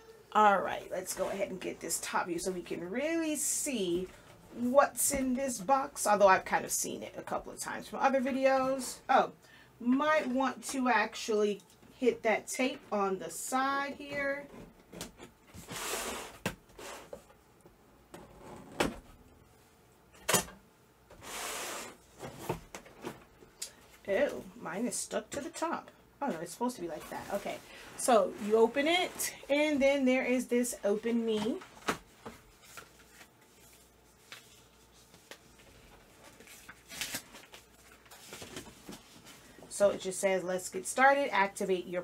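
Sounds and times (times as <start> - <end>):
packing tape scraping and rustling: 31.4 - 39.4.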